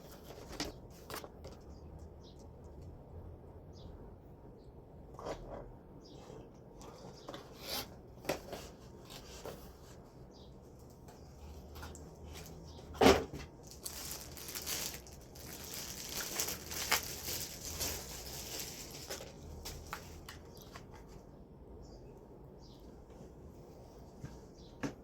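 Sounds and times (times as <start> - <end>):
packaging crinkling and rustling: 11.4 - 21.2.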